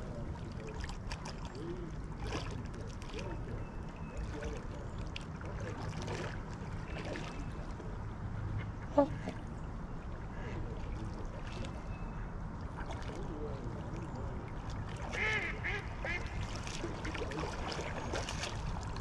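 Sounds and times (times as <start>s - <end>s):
waterfowl calling: 14.9s - 18.8s
waterfowl honk: 15.0s - 18.2s.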